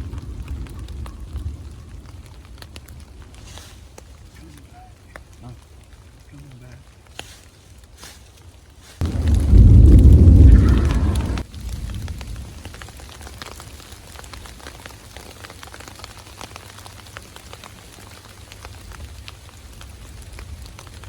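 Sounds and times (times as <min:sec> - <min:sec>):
thunder clap: 0:00.0 - 0:03.4, 0:09.0 - 0:13.0
raindrops ticking: 0:00.0 - 0:21.0
steady rain: 0:00.0 - 0:21.0.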